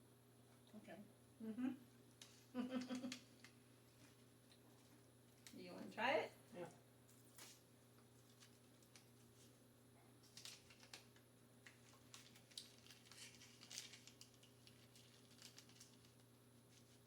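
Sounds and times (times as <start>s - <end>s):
snack packaging crinkling: 7.1s - 9.6s, 10.2s - 17.0s.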